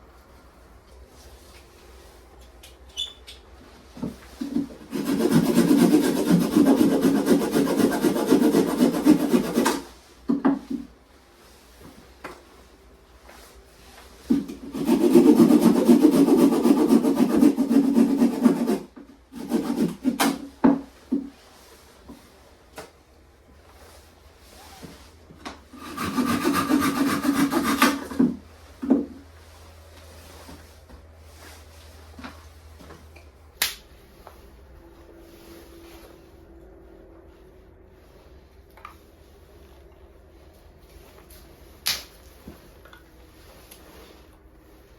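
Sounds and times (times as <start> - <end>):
rasping scrape on wood: 4.4 - 9.9, 14.5 - 20.4, 25.7 - 28.4.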